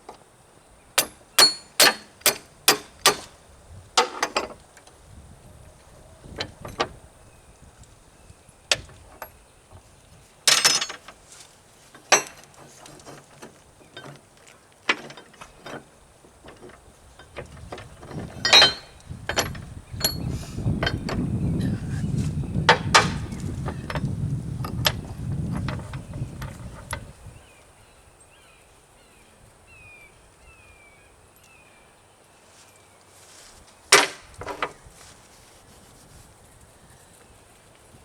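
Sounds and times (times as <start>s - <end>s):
hammer tapping metal pin: 1.0s - 3.3s
metal rattle: 1.0s - 3.4s, 4.0s - 4.6s, 10.5s - 22.0s, 22.6s - 27.2s, 33.9s - 34.8s
steel parts clanking: 1.0s - 3.4s, 4.0s - 4.6s, 10.5s - 11.2s, 11.9s - 21.8s, 22.7s - 27.1s, 33.9s - 34.8s.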